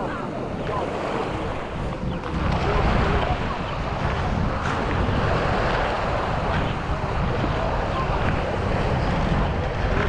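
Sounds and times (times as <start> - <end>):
surf washing on shore: 0.0 - 10.0
wind on microphone: 0.0 - 10.0.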